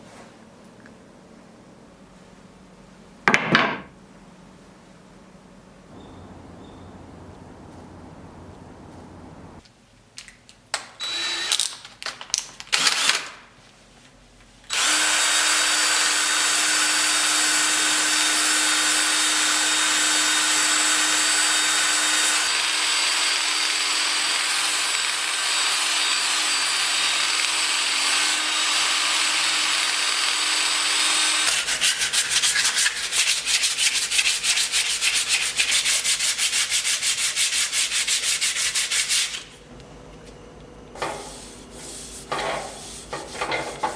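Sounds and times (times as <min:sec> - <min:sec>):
power sander humming: 0:05.9 - 0:09.6
power tool bursts: 0:11.0 - 0:11.8, 0:12.8 - 0:13.3, 0:14.7 - 0:31.6
rapid rubbing strokes on wood: 0:31.5 - 0:39.5, 0:41.2 - 0:43.9.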